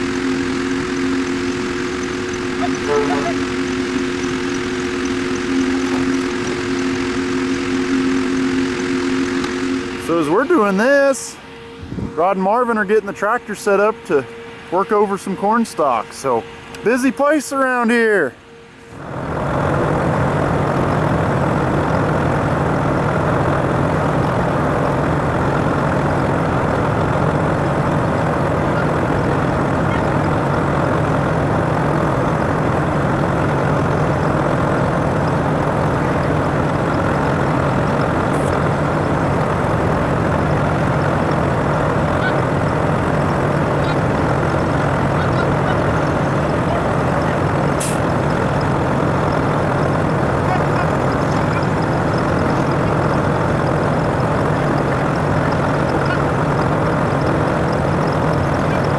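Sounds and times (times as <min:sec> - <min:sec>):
heavy engine running: 0:00.0 - 0:58.9
steady low hum: 0:00.0 - 0:58.9.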